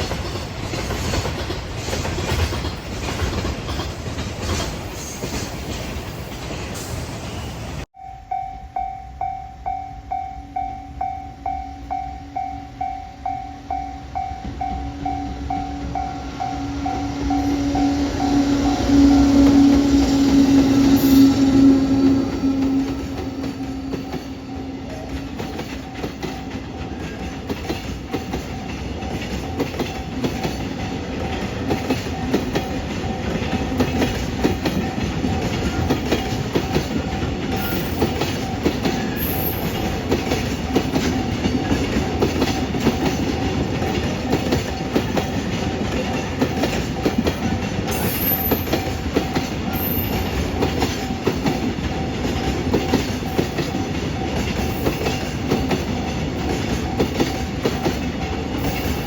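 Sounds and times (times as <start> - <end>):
train wheels clacking on rail joints: 0.0 - 7.9, 15.9 - 59.0
train rumble: 0.0 - 8.0, 11.5 - 59.0
faint wheel and rail ringing: 4.8 - 59.0.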